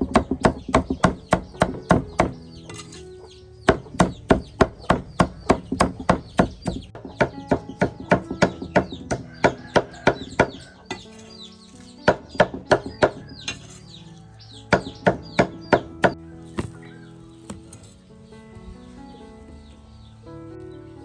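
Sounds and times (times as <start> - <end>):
knife chopping on cutting board: 16.6 - 16.8, 17.5 - 17.9.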